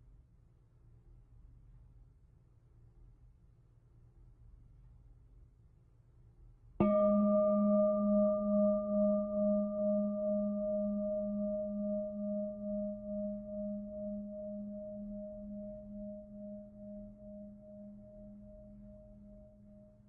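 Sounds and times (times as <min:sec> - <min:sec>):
singing bowl ringing: 0:06.8 - 0:20.0.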